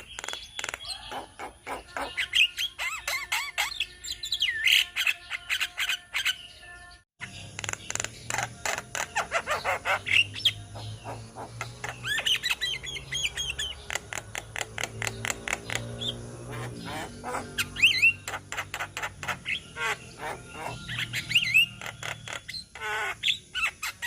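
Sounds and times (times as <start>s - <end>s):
mynas chattering: 7.6s - 23.2s.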